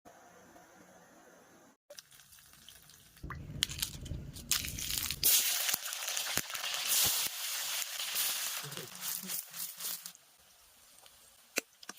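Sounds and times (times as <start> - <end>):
oil sizzling and popping in a pan: 1.9 - 10.3.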